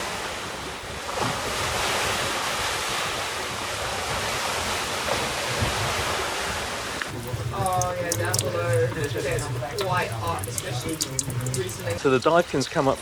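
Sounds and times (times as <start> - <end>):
breaking water: 7.0 - 12.0.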